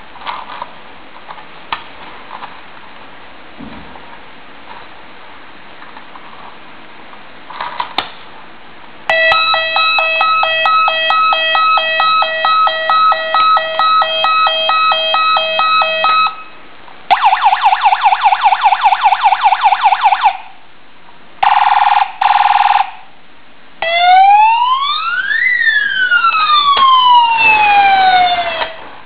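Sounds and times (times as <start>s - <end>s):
stepped beeping tune: 9.1s - 16.6s
toy electronic siren: 9.1s - 20.4s, 23.8s - 28.8s.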